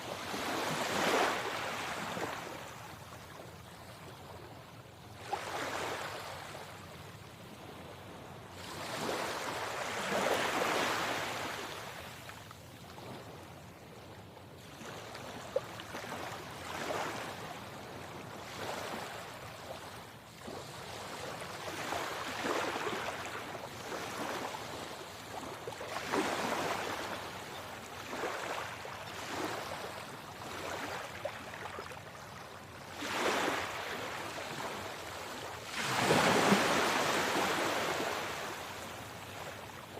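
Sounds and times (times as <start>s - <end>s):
sea waves washing in: 32.9s - 39.9s.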